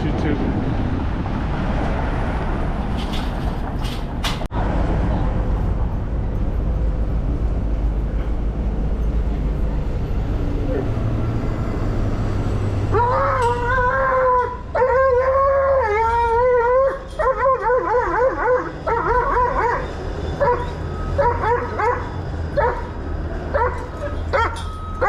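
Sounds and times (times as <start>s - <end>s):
dog howling: 12.9s - 22.9s, 23.5s - 24.6s
dog yelping whines and yips: 12.9s - 22.9s, 23.5s - 25.0s.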